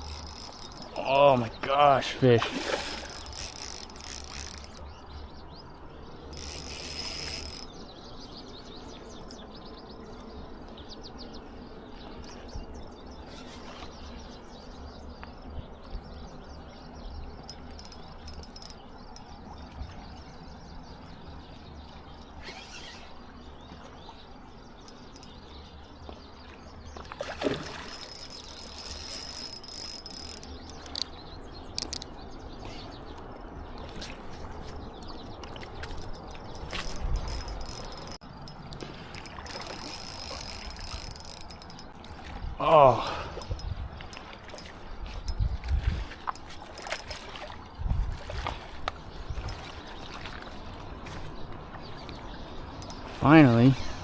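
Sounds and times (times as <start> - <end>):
fishing reel whirring: 0.0 - 1.3, 2.6 - 5.0, 6.2 - 7.9, 17.2 - 19.5, 22.2 - 23.3, 24.8 - 25.4, 27.4 - 32.8, 35.8 - 47.2, 52.8 - 53.0.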